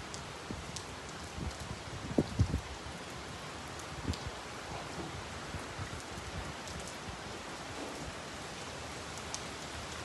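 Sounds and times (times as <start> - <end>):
steady rain hissing: 0.0 - 10.0.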